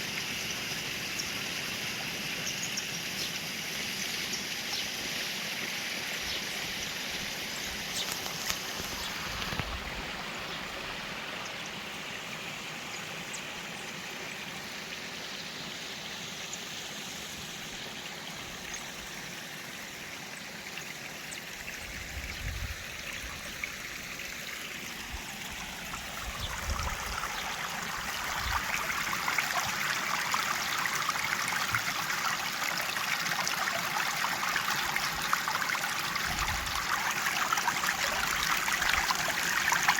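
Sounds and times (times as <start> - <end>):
water rushing over a cascade: 22.8 - 39.9.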